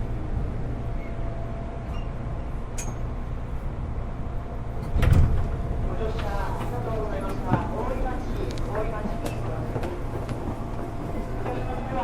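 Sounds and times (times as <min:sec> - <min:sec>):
train interior rumble: 0:00.0 - 0:12.0
loud thud with rush of noise: 0:04.8 - 0:05.7.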